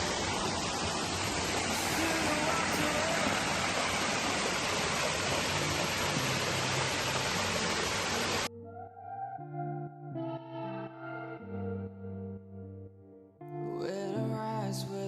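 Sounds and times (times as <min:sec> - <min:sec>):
waterfall rushing: 0:00.0 - 0:08.5
music: 0:01.8 - 0:04.0, 0:05.2 - 0:15.0.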